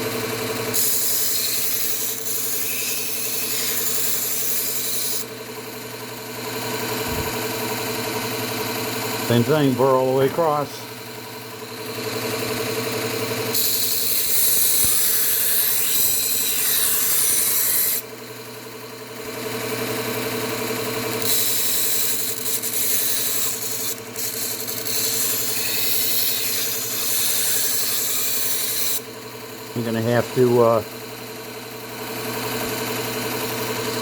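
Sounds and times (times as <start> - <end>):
belt sharpener motor running: 0.0 - 34.0
knife grinding on abrasive belt: 0.7 - 5.4, 11.7 - 18.1, 21.2 - 29.1.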